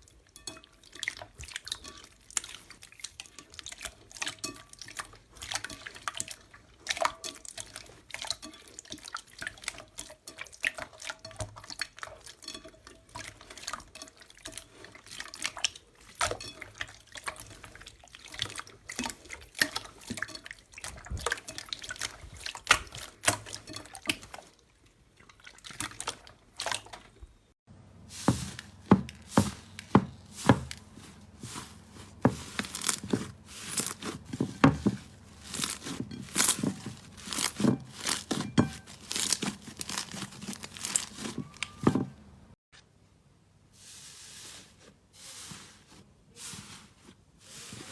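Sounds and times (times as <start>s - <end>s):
wet squelches: 0.0s - 27.5s, 28.1s - 41.8s
slime squished by hand: 28.2s - 41.8s.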